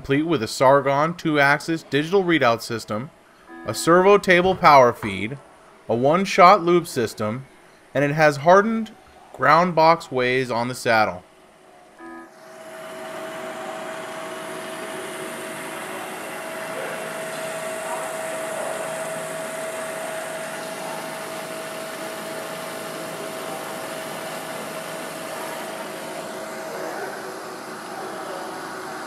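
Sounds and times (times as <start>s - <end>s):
machine tool whining: 3.4s - 5.3s, 11.9s - 29.0s.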